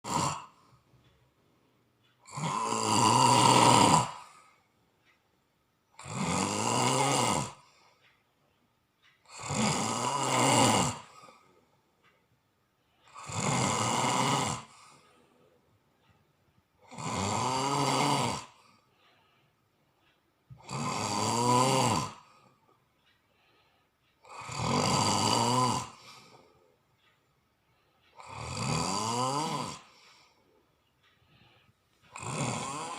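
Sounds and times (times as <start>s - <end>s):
loud rattling snores: 0.0s - 0.8s, 2.2s - 4.6s, 5.9s - 7.9s, 9.2s - 11.5s, 13.1s - 15.0s, 16.8s - 18.8s, 20.6s - 22.5s, 24.2s - 26.4s, 28.1s - 30.4s, 32.1s - 32.9s
quiet breathing: 0.0s - 32.9s.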